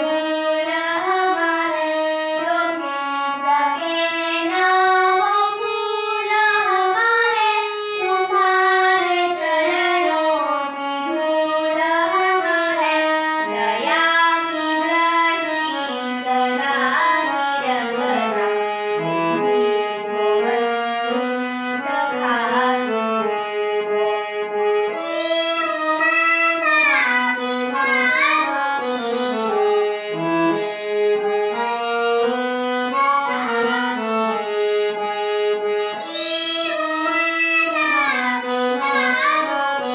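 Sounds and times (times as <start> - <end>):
girl singing: 0.0 - 18.6, 21.8 - 23.0, 24.9 - 29.6, 32.9 - 34.0, 36.0 - 39.9
reedy instrumental accompaniment: 0.0 - 39.9.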